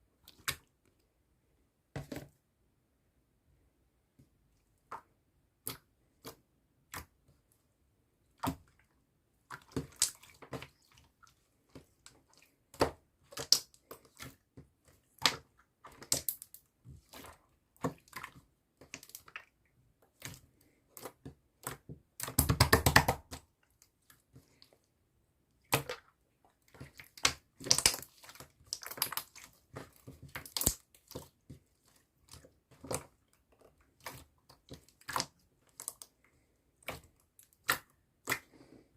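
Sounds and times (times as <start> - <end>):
small objects clicking and tapping: 27.2 - 28.1, 30.1 - 31.2.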